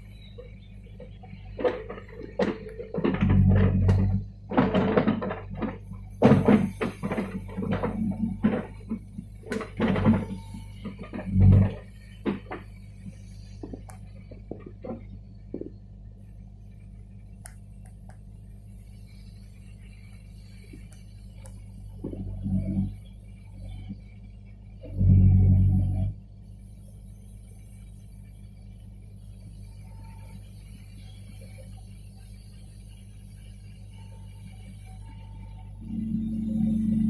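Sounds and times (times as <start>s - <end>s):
diesel engine running: 0.0s - 37.0s
metal clanks and knocks: 1.0s - 12.7s.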